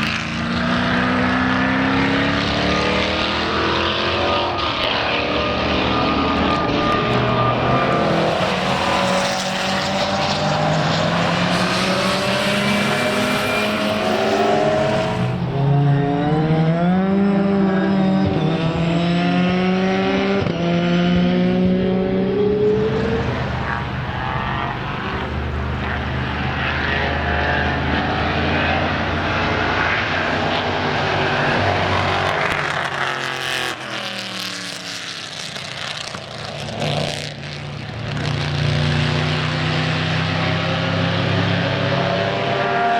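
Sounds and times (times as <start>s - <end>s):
racing car engines at full throttle: 0.0s - 42.9s.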